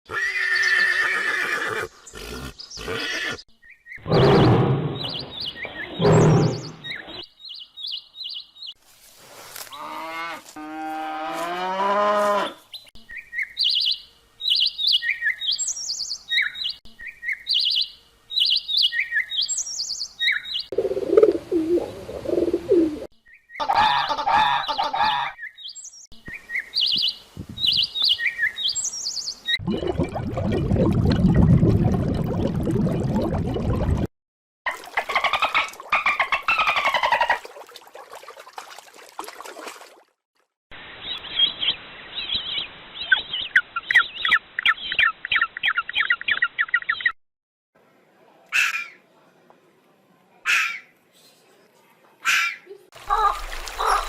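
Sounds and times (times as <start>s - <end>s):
rising pitched animal calls: 4.0s - 7.2s.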